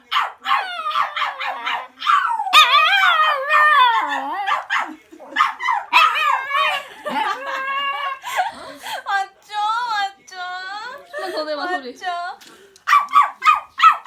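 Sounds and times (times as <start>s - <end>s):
puppy howling and yipping: 0.2s - 6.8s.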